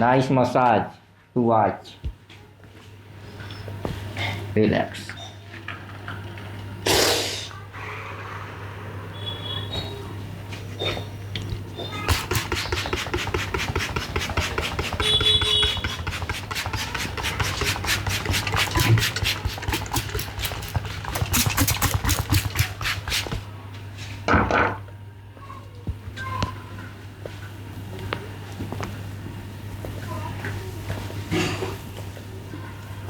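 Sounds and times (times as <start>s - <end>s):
burst of noise: 6.8s - 7.5s.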